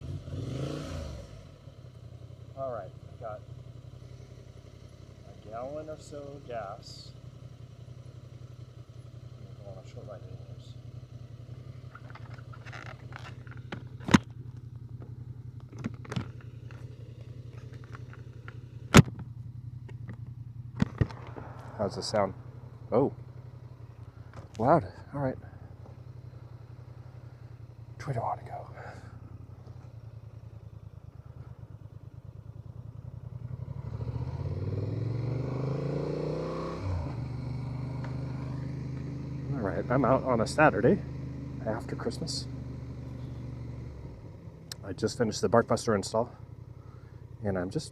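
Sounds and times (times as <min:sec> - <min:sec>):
motorcycle engine idling: 0:01.4 - 0:47.9.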